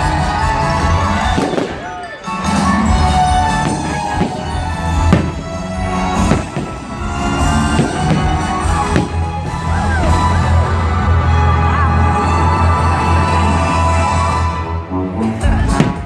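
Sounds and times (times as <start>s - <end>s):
firework bangs: 1.2s - 10.5s, 15.7s - 16.0s.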